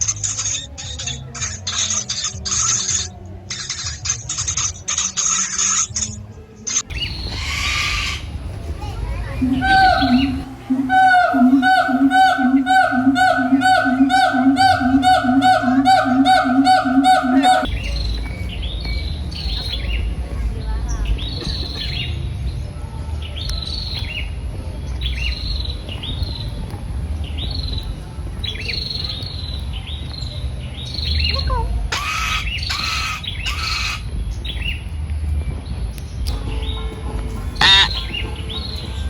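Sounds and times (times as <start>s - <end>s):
bird chirping: 0.0s - 8.6s, 9.2s - 20.1s, 36.0s - 39.0s
harsh bird squawks: 6.9s - 8.4s, 9.4s - 17.7s, 31.3s - 34.1s, 37.6s - 38.3s
low rumble: 6.9s - 31.9s
wavering pitched tone: 9.4s - 17.7s, 37.3s - 38.9s.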